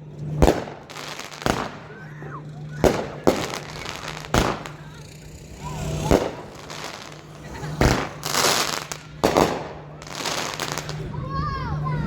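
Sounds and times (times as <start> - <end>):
firework bangs with rumble: 0.3 - 5.0, 6.1 - 11.0.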